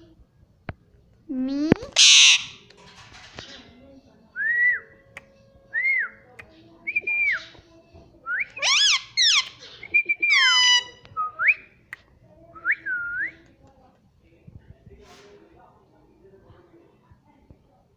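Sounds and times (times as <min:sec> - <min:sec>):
parrot whistling: 0:02.0 - 0:02.6, 0:08.6 - 0:09.5.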